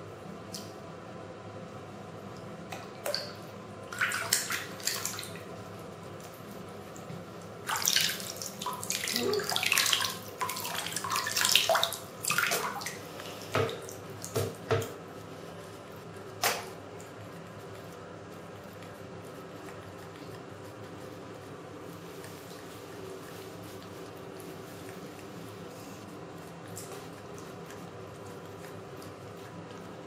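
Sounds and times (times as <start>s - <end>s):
faucet water splashing: 2.8s - 5.6s, 6.2s - 15.0s.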